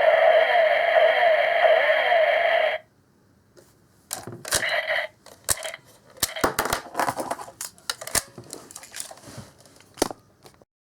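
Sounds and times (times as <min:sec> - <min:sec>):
plastic toy clicks and rattles: 0:04.1 - 0:10.2.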